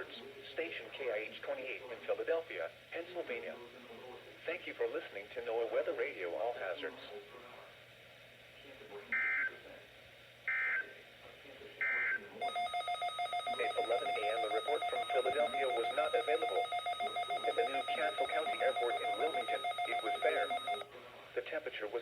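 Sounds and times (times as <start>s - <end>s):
broadcast voice: 12.4s - 20.8s
rapid electronic alert beep: 12.4s - 20.8s.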